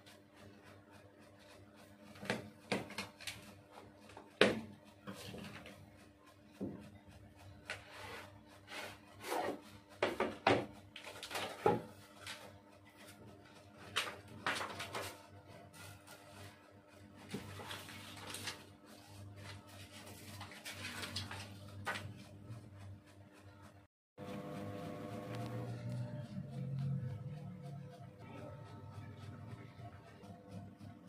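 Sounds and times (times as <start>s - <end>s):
short sliding scrapes: 7.8s - 9.8s.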